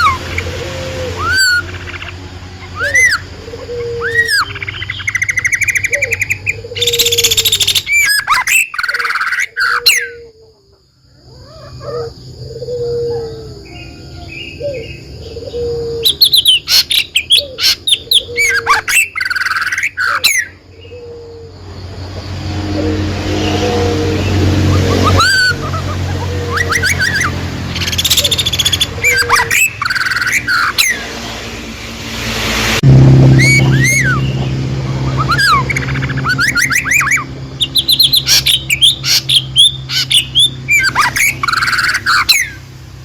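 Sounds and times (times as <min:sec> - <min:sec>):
birds chirping and trilling: 0:00.0 - 0:43.0
low repeated bird notes: 0:00.0 - 0:43.0
sharp down-sweeping whistle notes: 0:32.9 - 0:34.4.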